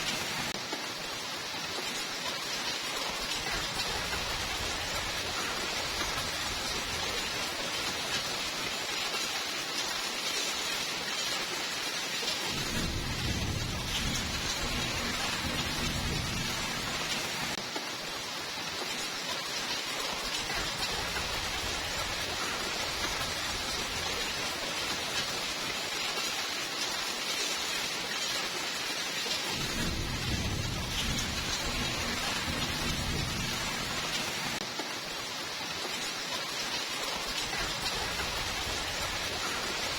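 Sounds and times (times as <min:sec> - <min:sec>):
steady rainfall: 0:00.0 - 0:39.9
low rolls of thunder: 0:12.5 - 0:17.6, 0:29.5 - 0:34.6.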